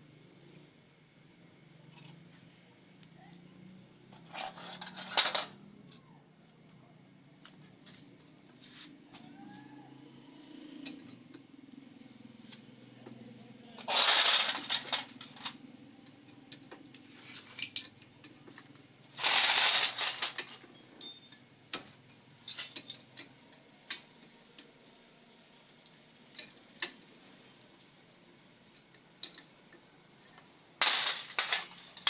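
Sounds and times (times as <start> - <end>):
metal tools clinking: 4.2 - 5.6, 13.8 - 15.6, 19.2 - 21.4, 30.8 - 32.0.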